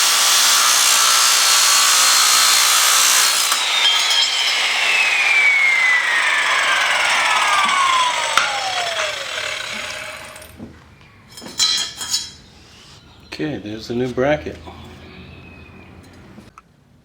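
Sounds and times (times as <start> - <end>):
power saw winding down: 0.0 - 10.6, 13.3 - 16.5.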